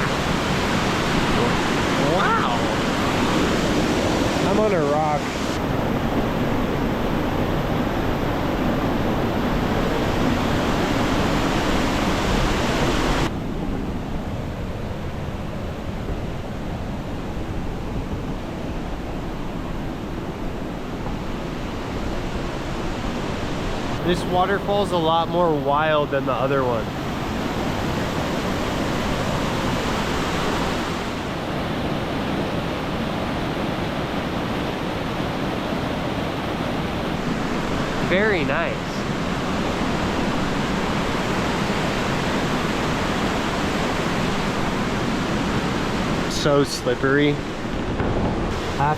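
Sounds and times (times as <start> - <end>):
waterfall roaring: 0.0 - 7.2, 22.7 - 32.6, 34.1 - 48.9.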